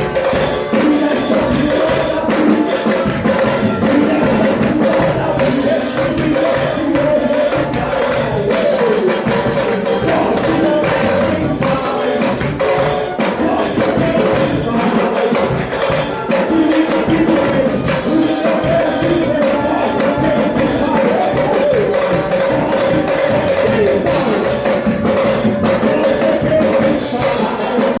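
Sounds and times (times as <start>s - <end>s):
band playing percussive music: 0.0s - 28.0s.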